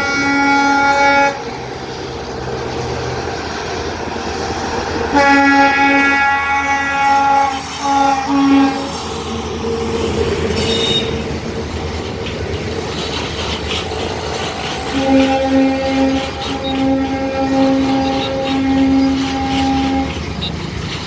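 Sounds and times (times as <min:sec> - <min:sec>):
locomotive horn blasts: 0:00.0 - 0:01.6, 0:05.1 - 0:09.1, 0:10.5 - 0:11.4, 0:14.9 - 0:20.2
freight train wagons rumbling: 0:00.0 - 0:21.0
high squeal: 0:07.0 - 0:11.4.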